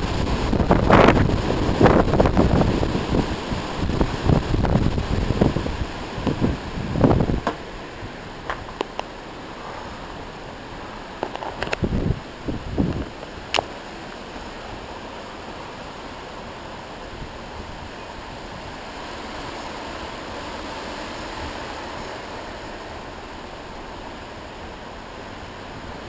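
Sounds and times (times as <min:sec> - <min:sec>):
storm wind rushing: 0:00.0 - 0:08.7, 0:11.6 - 0:13.5.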